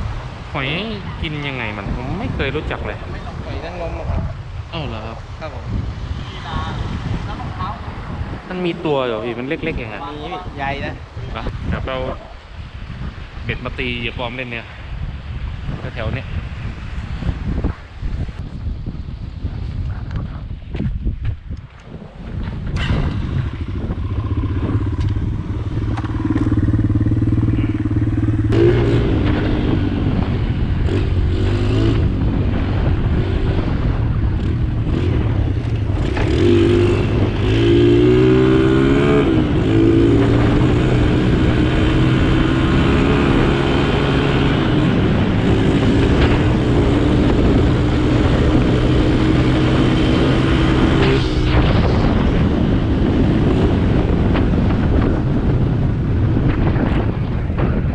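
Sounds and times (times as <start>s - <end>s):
engine running: 22.8s - 32.5s.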